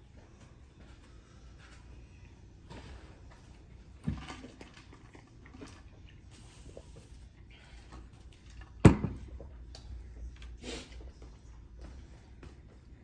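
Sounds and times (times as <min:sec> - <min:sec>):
eating and food handling: 0:00.2 - 0:13.0.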